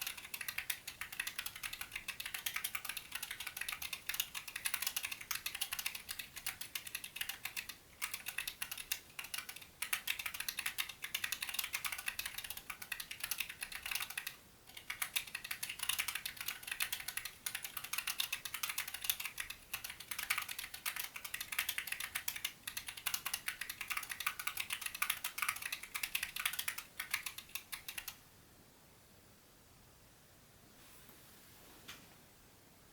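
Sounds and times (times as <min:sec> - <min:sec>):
mechanical keyboard typing: 0:00.0 - 0:28.2.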